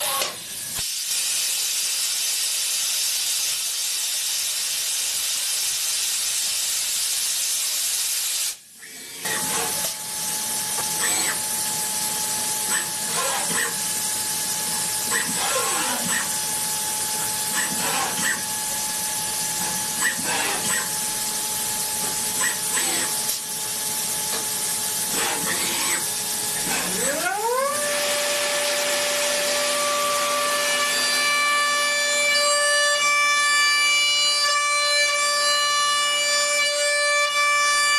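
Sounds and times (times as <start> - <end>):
machine hiss: 0.0 - 27.1
loud steady hiss: 0.7 - 8.8.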